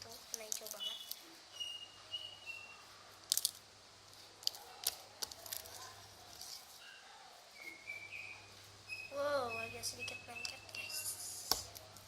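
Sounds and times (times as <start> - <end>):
sticky slime squelching: 0.0 - 1.4, 2.4 - 6.8.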